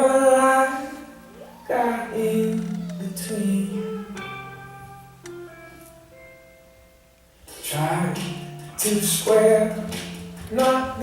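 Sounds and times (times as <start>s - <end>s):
plucked guitar notes: 1.2s - 6.6s.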